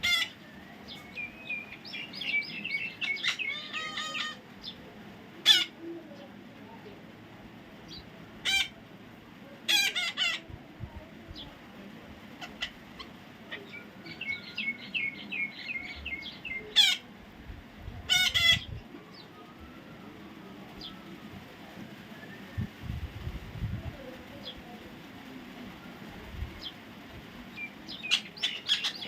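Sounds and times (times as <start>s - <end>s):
parrot screeching: 0.0s - 0.4s, 3.0s - 4.4s, 8.4s - 8.7s, 16.8s - 17.0s, 18.1s - 18.7s.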